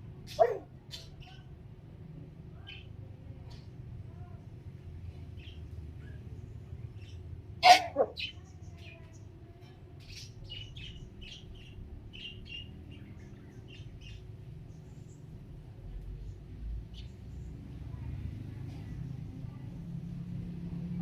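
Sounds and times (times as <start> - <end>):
loud parrot call: 7.6 - 8.3
parrots chirping: 7.6 - 8.4.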